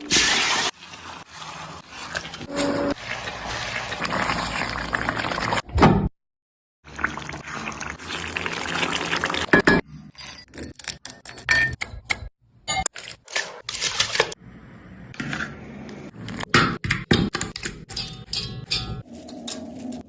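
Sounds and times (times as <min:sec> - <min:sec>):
metal utensils clinking on cookware: 0:17.6 - 0:20.0.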